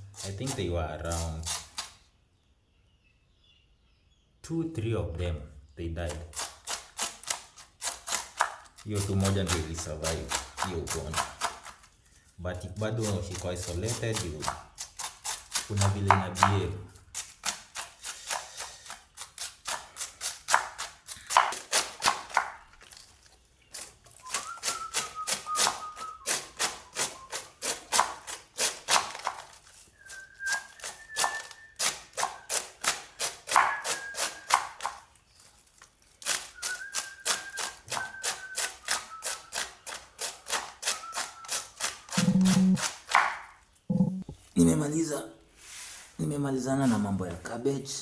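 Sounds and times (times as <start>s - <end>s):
knife chopping cabbage on board: 0.1s - 2.0s, 6.1s - 11.8s, 13.0s - 22.6s, 23.8s - 29.6s, 30.5s - 35.1s, 36.2s - 44.1s.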